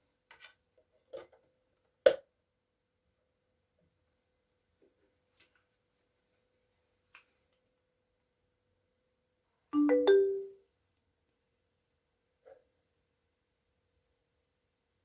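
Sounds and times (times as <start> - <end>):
bell-like mallet chime: 9.8 - 10.6.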